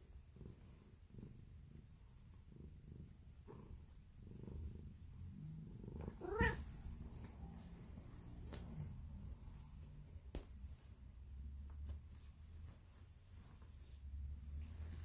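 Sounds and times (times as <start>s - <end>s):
cat purring: 0.0s - 15.0s
cat meow: 6.1s - 6.8s.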